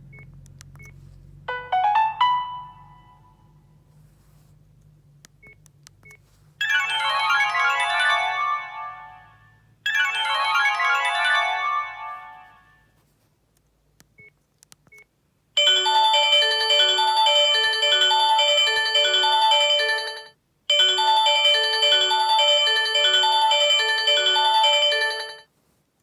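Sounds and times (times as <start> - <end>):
melodic phone ringtone: 1.5 - 3.4, 6.6 - 12.8, 15.6 - 25.5
ringtone with repeating notes: 1.5 - 3.5, 6.6 - 12.9, 15.6 - 25.5.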